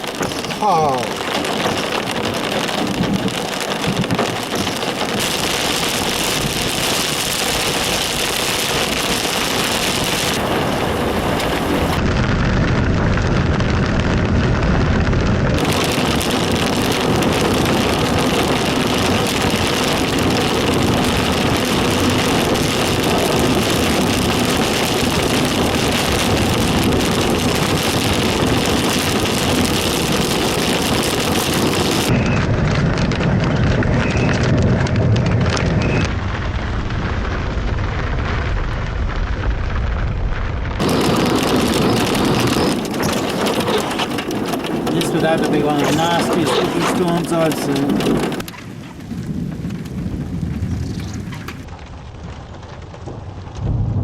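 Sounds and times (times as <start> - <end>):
deep thunder rumble: 0.0 - 54.0
heavy rain falling: 0.0 - 54.0.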